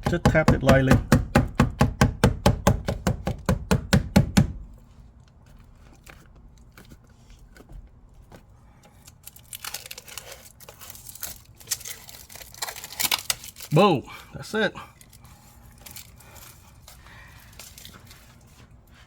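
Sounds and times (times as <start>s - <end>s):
faint rustling handling noises: 4.7s - 19.0s.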